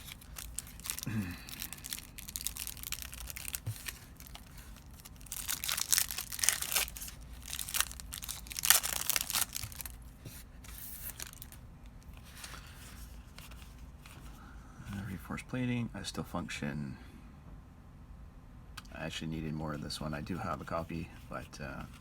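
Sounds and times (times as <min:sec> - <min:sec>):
plastic wrapper crinkling and tearing: 0:00.0 - 0:11.6.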